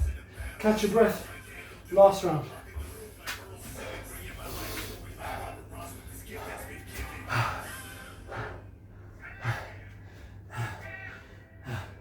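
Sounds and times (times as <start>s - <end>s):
steady low hum: 0.0s - 12.0s
man breathing hard and gasping: 3.6s - 12.0s.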